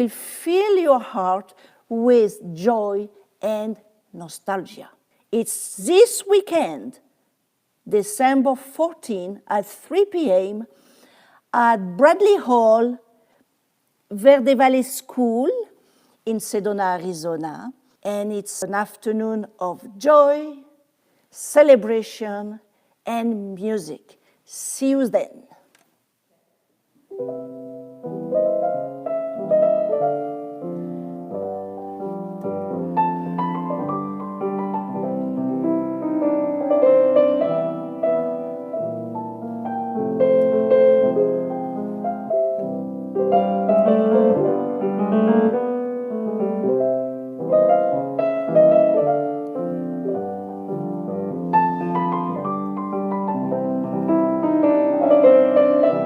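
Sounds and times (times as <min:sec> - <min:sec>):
slow solo piano piece: 0:27.1 - 0:56.0.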